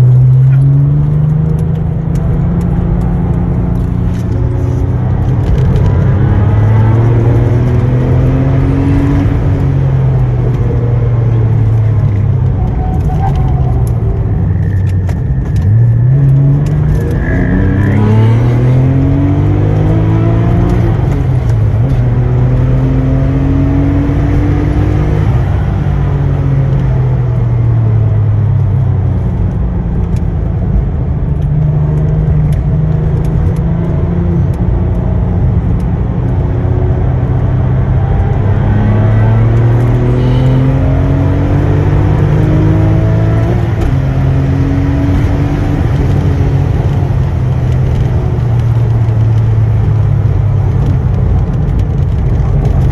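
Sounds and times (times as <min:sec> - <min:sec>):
car engine revving from inside cabin: 0:00.0 - 0:27.3, 0:30.9 - 0:52.8.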